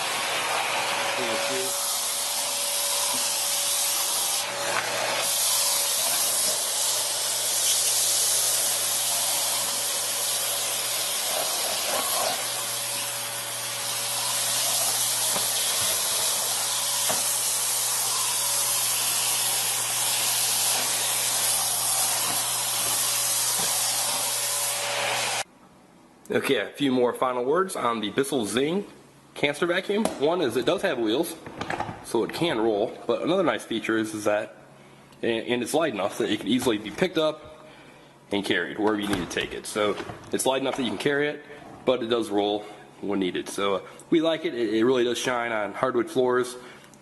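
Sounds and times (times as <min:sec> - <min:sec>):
canister vacuum running: 0:00.0 - 0:25.5.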